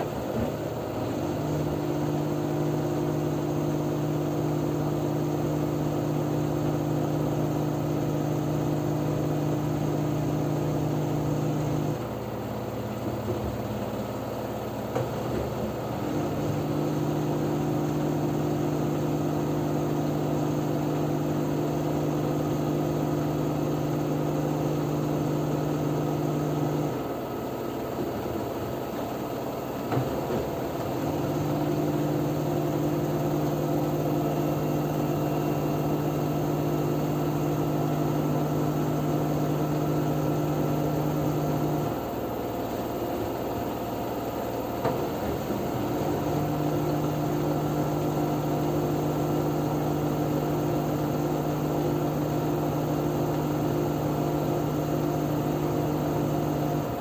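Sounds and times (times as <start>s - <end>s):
washing machine spinning: 0.0s - 57.0s.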